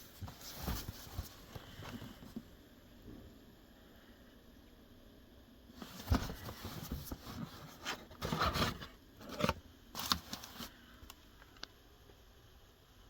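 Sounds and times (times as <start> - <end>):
cardboard scraping and rubbing: 0.0 - 2.4, 5.8 - 10.7.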